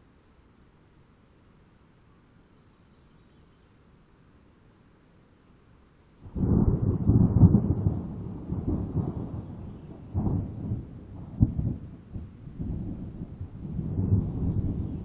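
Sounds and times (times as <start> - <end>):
thunder rumbling: 6.2 - 15.0
thunder crack: 6.3 - 15.0.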